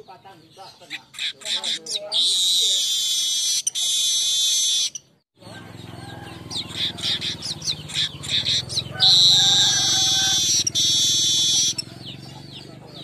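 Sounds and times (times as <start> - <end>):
bird buzzing trill: 2.2 - 5.1, 6.5 - 11.9.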